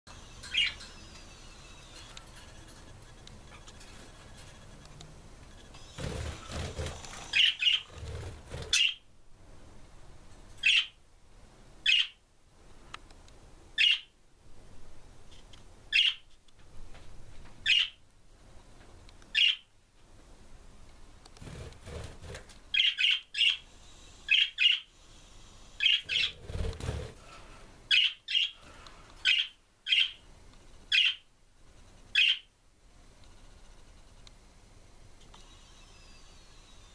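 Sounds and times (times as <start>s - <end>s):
rustling fluttering wings: 5.6s - 9.0s, 21.4s - 22.6s, 25.9s - 27.3s.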